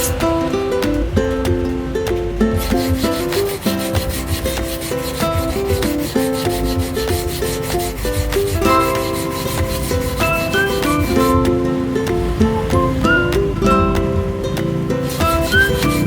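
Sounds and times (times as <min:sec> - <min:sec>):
plucked background music: 0:00.0 - 0:16.0
knife rubbing on sharpener: 0:02.8 - 0:11.0.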